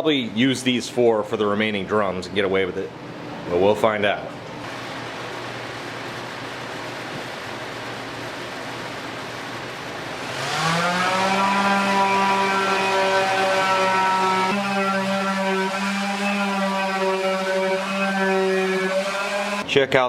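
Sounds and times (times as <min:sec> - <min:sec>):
electric tool motor whining: 0:10.2 - 0:19.6.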